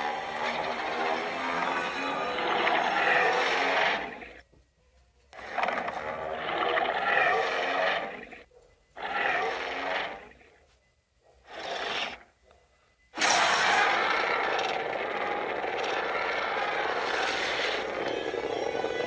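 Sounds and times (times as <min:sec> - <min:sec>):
monster roaring: 0:00.0 - 0:04.3, 0:09.0 - 0:10.3, 0:13.2 - 0:19.0
monster growl: 0:13.3 - 0:19.0.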